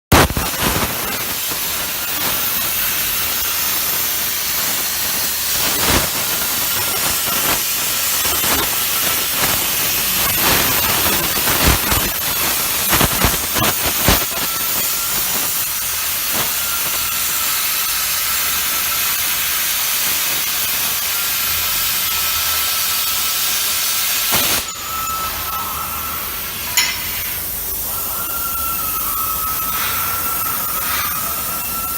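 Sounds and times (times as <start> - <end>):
plasma cutter hissing: 0.1 - 31.9
thin whistling tone: 24.6 - 31.9.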